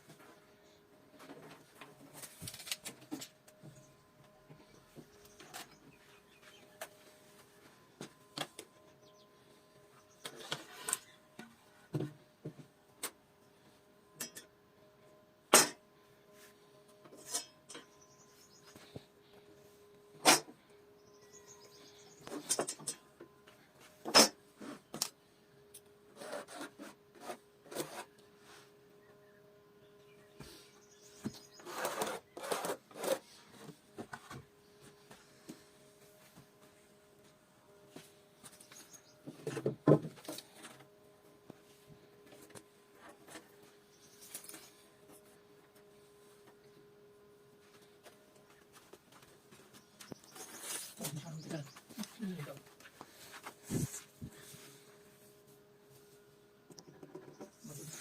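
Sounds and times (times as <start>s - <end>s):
faint steady hum: 0.0s - 58.0s
scraping strokes on wood: 26.1s - 28.7s, 31.2s - 34.4s.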